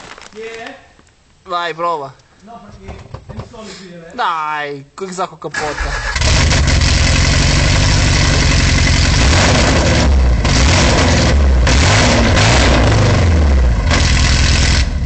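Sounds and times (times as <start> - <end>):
car engine revving hard: 5.8 - 15.0.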